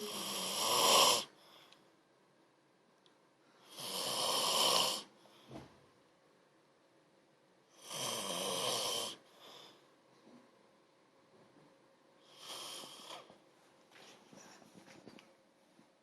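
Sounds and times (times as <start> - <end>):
person snoring: 0.0 - 1.3, 3.6 - 5.1, 7.8 - 9.2, 12.3 - 13.3.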